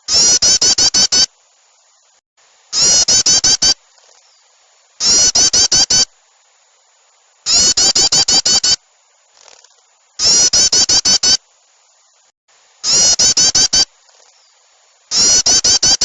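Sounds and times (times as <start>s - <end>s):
agitated small-bird calls: 0.0s - 1.3s, 2.7s - 6.1s, 7.5s - 8.8s, 9.4s - 11.4s, 12.8s - 16.0s.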